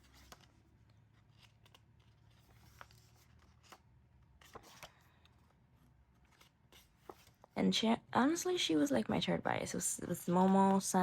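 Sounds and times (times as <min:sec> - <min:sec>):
paper pages rustling: 0:00.0 - 0:07.6, 0:10.0 - 0:11.0.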